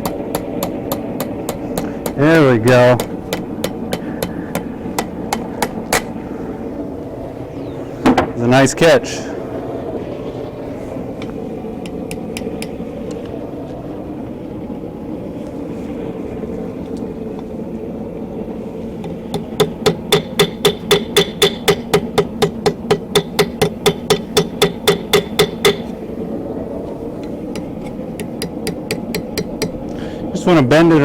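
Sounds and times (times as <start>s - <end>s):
steady background noise: 0.0s - 31.0s
hammer striking steel on anvil: 19.1s - 26.0s, 27.5s - 29.8s.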